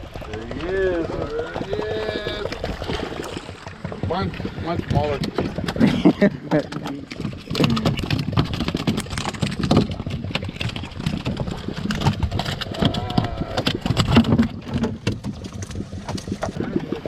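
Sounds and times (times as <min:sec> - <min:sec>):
boat motor running: 0:00.0 - 0:17.0
indistinct voices: 0:12.7 - 0:13.8.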